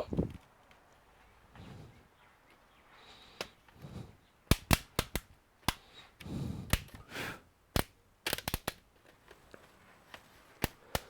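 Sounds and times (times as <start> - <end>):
laptop parts clicking and knocking: 7.7 - 9.4
rustling handling noise: 8.9 - 10.9.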